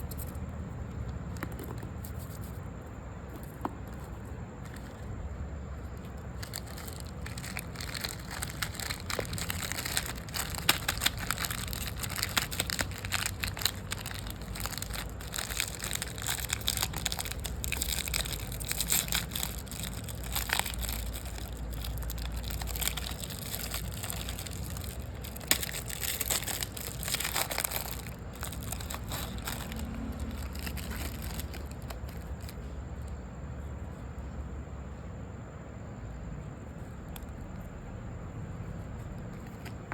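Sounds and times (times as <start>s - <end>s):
crisp snack crunching: 6.0s - 32.7s.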